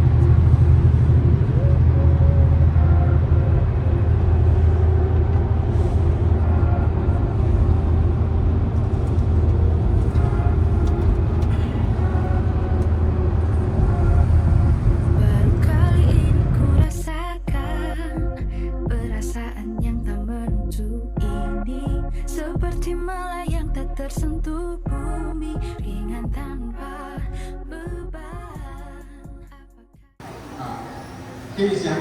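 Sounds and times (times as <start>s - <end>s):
vehicle rumbling: 0.0s - 29.3s, 30.2s - 32.0s.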